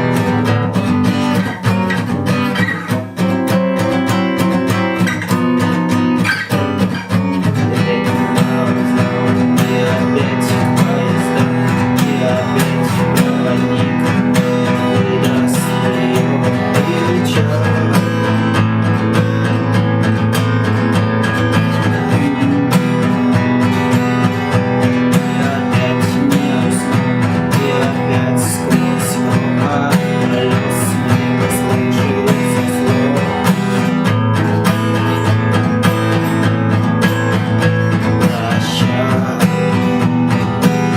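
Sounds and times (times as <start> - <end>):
acoustic guitar strumming: 0.0 - 40.9.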